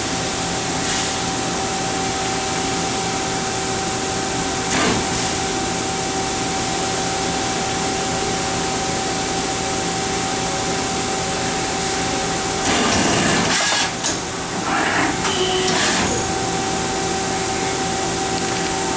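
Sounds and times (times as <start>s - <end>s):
lathe humming and whining: 5.5s - 18.9s.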